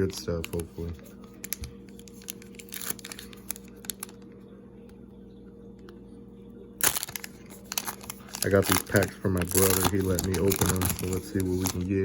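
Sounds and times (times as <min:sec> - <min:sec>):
foil wrapper tearing and crinkling: 0:01.4 - 0:04.2, 0:06.8 - 0:12.0.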